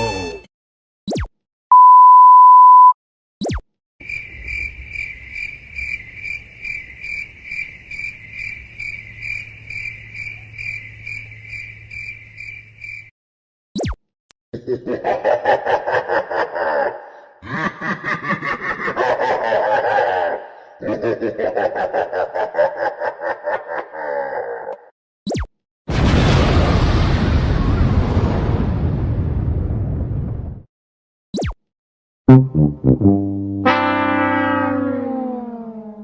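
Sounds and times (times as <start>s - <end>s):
crickets chirping: 4.0s - 13.1s.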